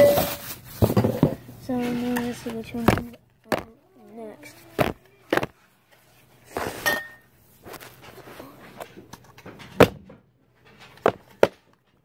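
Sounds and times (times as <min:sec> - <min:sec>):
plastic containers scuffing: 0:00.0 - 0:03.8, 0:04.5 - 0:05.6, 0:06.4 - 0:07.0, 0:07.6 - 0:09.9, 0:10.6 - 0:11.7.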